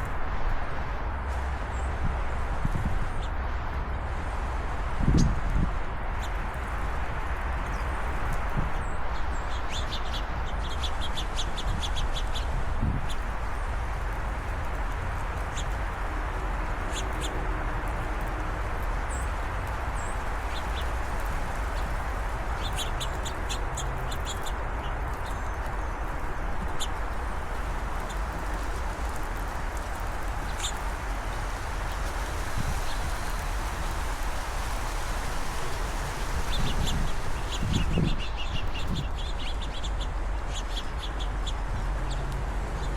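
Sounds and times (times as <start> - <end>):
steady background noise: 0.0 - 42.9
small birds chirping: 7.6 - 13.6, 14.4 - 16.0, 16.8 - 18.0, 19.0 - 42.9.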